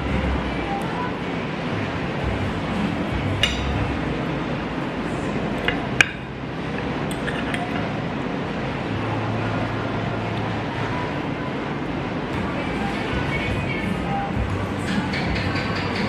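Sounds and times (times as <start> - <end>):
cutlery and dishes clinking: 3.4 - 3.8, 7.1 - 7.9.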